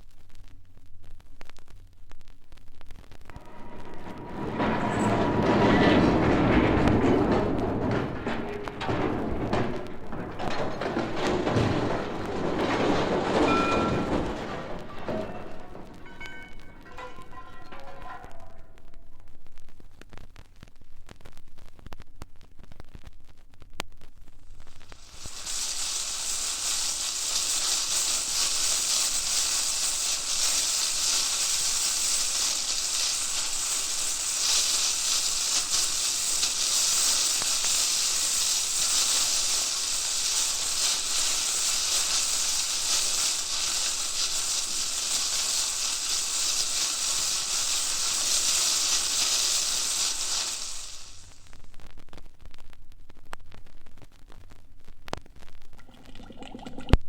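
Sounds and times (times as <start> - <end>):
loud hissing sizzle: 24.5 - 51.7.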